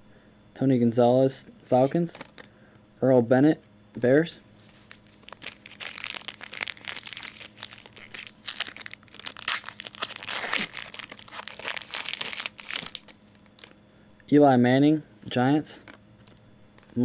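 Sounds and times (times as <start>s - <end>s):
card pack wrapper crinkling: 1.8s - 2.5s, 4.6s - 13.8s.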